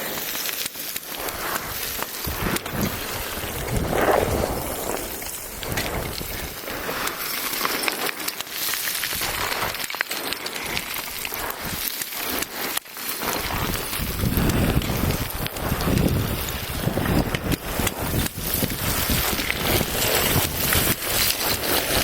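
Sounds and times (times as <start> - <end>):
stones clattering down a slope: 0.0 - 22.0
wind rumbling on microphone: 1.2 - 7.2, 9.0 - 9.8, 10.6 - 11.8, 13.3 - 22.0.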